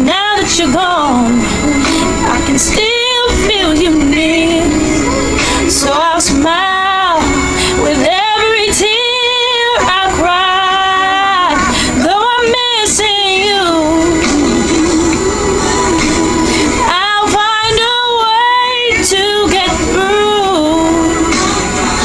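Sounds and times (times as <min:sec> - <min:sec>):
backing music: 0:00.0 - 0:22.0.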